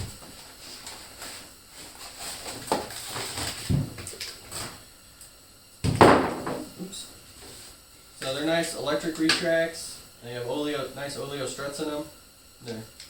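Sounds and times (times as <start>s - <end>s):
packaging rustling: 0.4s - 4.8s.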